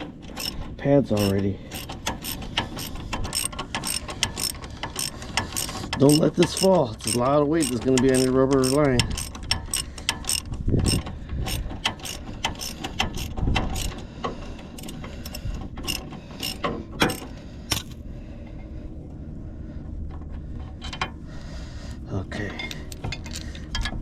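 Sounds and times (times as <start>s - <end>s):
ratchet wrench clicking: 0.3s - 0.6s, 1.2s - 13.9s, 14.8s - 17.9s.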